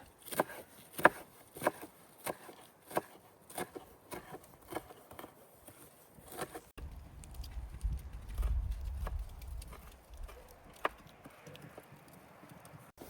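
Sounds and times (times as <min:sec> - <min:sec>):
knife chopping on wooden board: 0:00.0 - 0:06.7.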